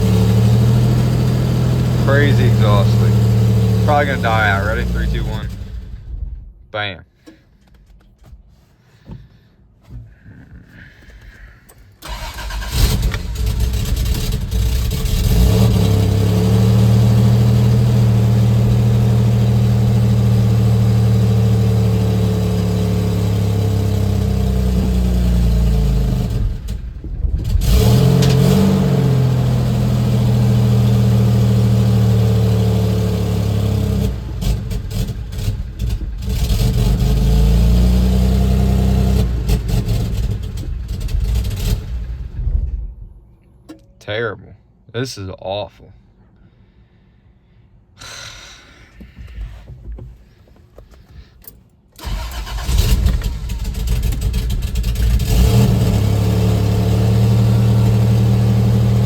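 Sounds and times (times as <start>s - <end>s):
engine running roughly: 0.0s - 6.3s, 12.0s - 42.4s, 52.0s - 59.0s.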